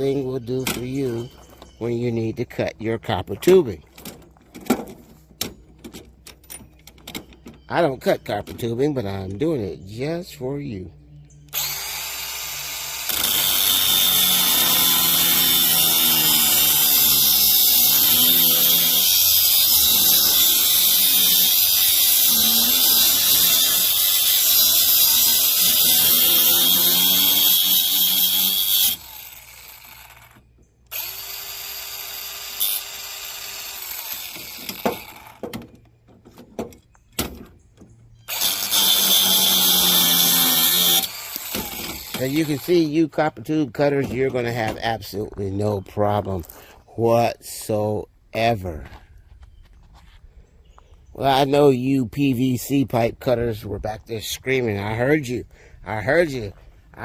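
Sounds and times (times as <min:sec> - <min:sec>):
angle grinder cutting metal tubing: 0:11.5 - 0:35.5, 0:38.3 - 0:43.3.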